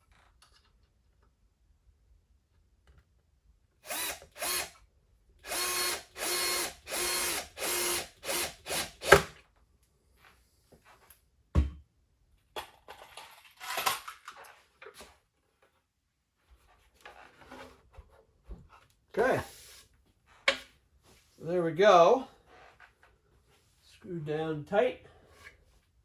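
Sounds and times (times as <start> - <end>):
power drill driving screws: 3.8 - 4.8, 5.4 - 9.4.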